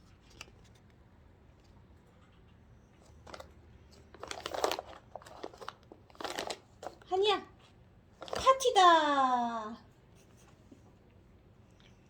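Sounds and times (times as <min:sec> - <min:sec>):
crinkling and crunching: 0:04.1 - 0:07.1.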